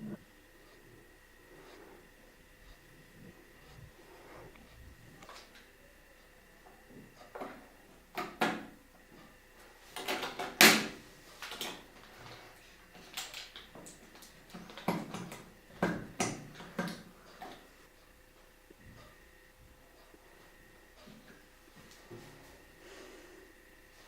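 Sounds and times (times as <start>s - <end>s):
computer parts clicking and knocking: 10.0s - 11.8s.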